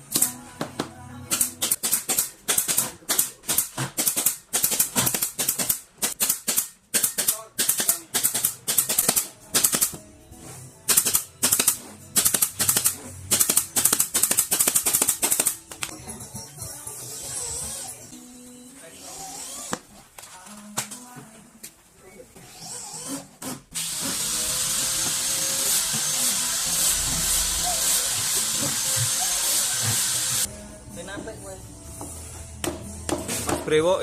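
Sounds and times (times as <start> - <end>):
background music: 0.0 - 3.4, 7.1 - 19.8, 23.8 - 34.0.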